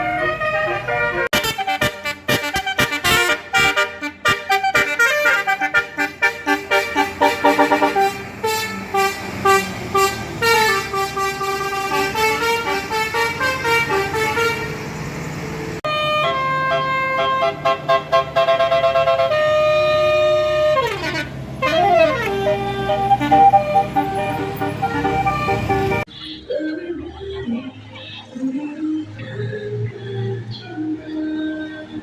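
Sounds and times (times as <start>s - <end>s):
bus multi-tone air horn melody: 0.0s - 15.0s, 15.8s - 26.1s.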